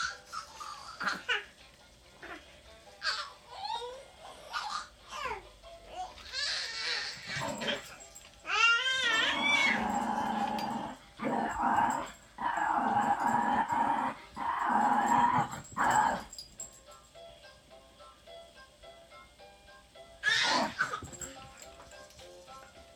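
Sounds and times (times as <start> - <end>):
dog whining and howling: 6.4 - 16.4, 20.2 - 21.3.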